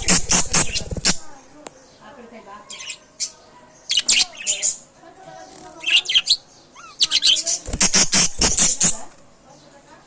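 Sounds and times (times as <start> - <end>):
budgerigars chirping: 0.0 - 1.2, 2.7 - 4.9, 5.6 - 9.1.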